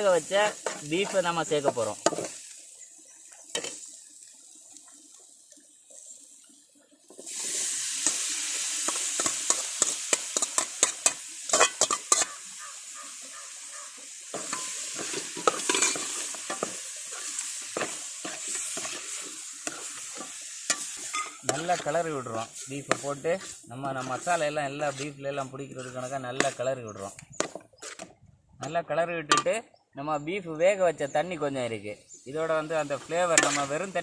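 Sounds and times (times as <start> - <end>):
ladle stirring and scraping: 0.0 - 2.5, 7.3 - 12.5, 14.3 - 28.2, 32.4 - 34.0
food sizzling in a pan: 0.0 - 28.0, 31.4 - 34.0.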